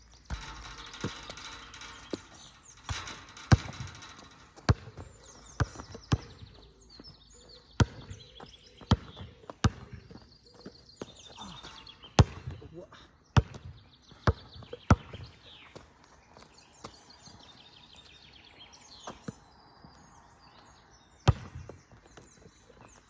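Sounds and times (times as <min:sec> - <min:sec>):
basketball bouncing on hard court: 0:00.3 - 0:06.6, 0:08.8 - 0:10.2, 0:12.2 - 0:12.6, 0:13.4 - 0:15.2, 0:21.3 - 0:21.8.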